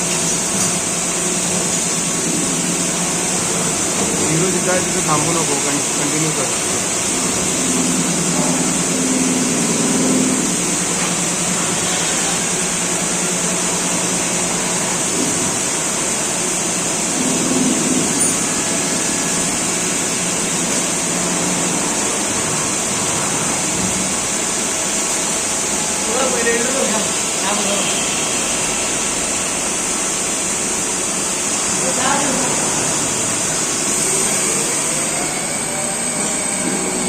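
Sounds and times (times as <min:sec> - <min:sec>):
lathe running hum: 0:00.0 - 0:37.0.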